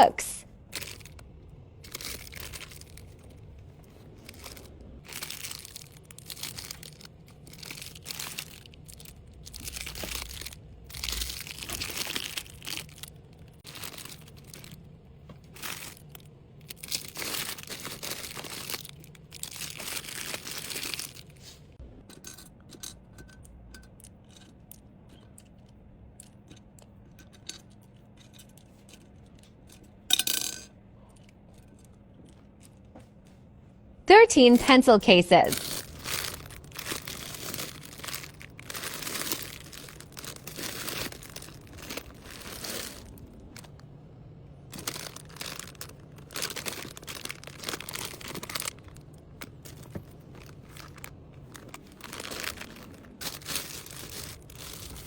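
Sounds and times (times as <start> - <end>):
packaging crinkling and rustling: 0.7 - 21.8, 35.5 - 43.9, 44.6 - 55.0.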